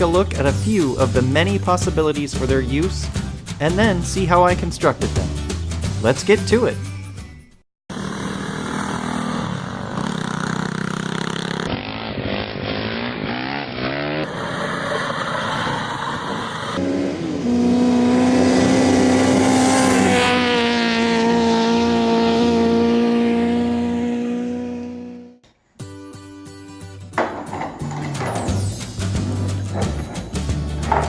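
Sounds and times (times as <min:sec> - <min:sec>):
motor revving: 0:07.9 - 0:14.9.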